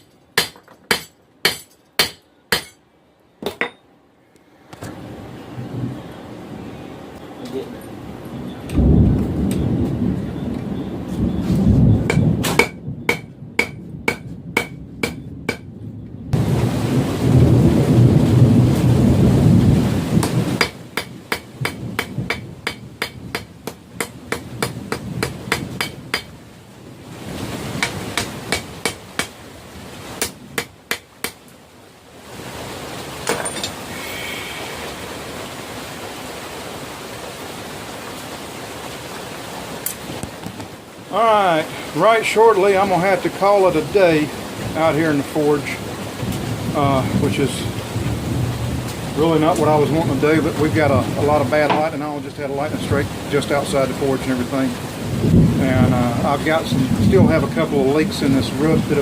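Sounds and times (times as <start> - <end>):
hammer striking steel on anvil: 0.0 - 2.8, 3.4 - 3.8, 12.1 - 15.7
rain hiss: 4.3 - 15.6, 16.4 - 59.0
thunder rumbling: 4.9 - 7.3, 8.0 - 30.7, 41.3 - 59.0.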